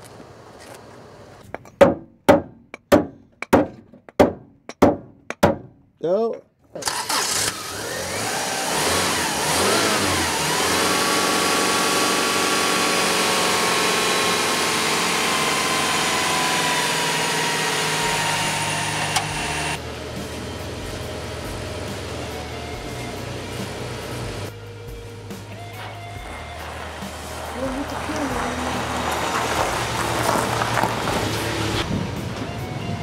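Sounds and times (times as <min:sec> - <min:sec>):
car engine revving and idling: 0:06.8 - 0:33.0.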